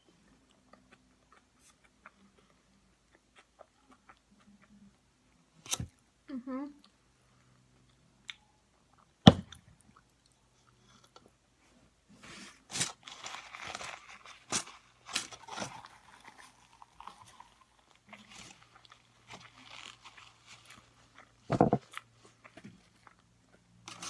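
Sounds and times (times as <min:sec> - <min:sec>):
close chewing and biting food: 0:00.3 - 0:04.8, 0:12.7 - 0:24.0.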